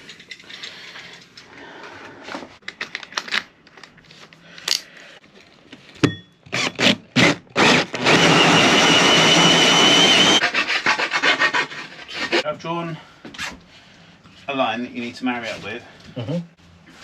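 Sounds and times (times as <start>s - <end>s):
power drill cutting into wood: 6.5s - 10.4s.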